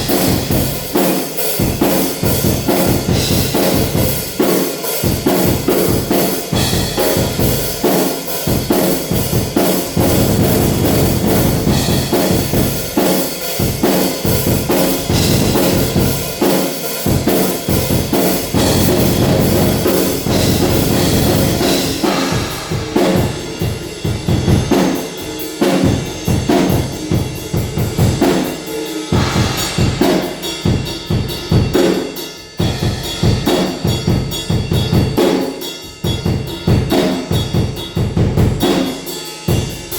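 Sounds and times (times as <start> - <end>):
acoustic drum kit groove: 0.0 - 39.9
cymbal wash: 0.0 - 39.9.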